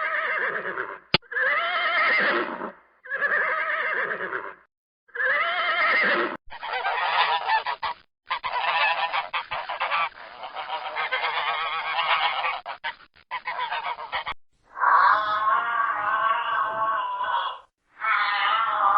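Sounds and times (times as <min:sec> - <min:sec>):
geese honking: 0:06.5 - 0:14.4.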